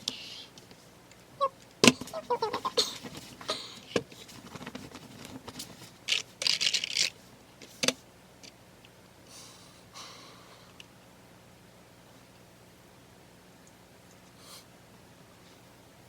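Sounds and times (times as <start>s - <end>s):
rustling and scraping of handling: 1.9s - 8.1s.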